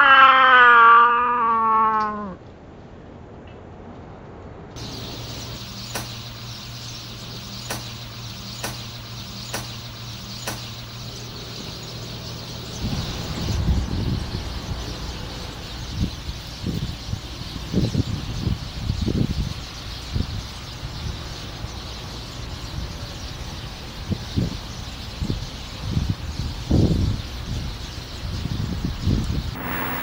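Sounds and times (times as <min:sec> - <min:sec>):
low mechanical hum: 0:02.4 - 0:24.0, 0:29.4 - 0:30.0
sharp clicks: 0:05.8 - 0:06.3, 0:07.6 - 0:08.0, 0:08.6 - 0:09.8, 0:10.4 - 0:10.8
low rumbling: 0:29.6 - 0:30.0.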